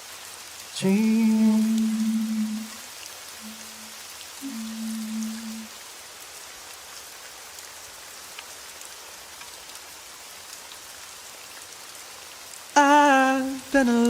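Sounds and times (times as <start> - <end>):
steady rain hiss: 0.0 - 14.0
raindrop ticks: 0.6 - 5.7, 6.7 - 10.9
low sung note: 3.4 - 5.7.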